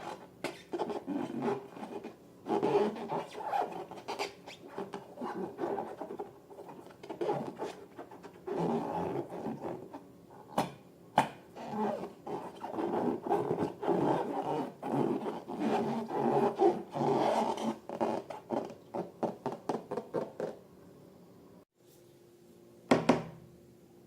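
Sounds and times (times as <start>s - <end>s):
balloons rubbed and squeezed: 0.0s - 10.0s, 11.6s - 20.3s.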